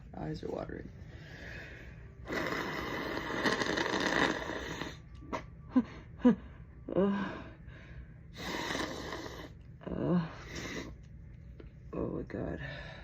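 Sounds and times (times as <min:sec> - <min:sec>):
breathy vocal noises: 0:01.4 - 0:11.0
woman blowing her nose: 0:02.3 - 0:05.0.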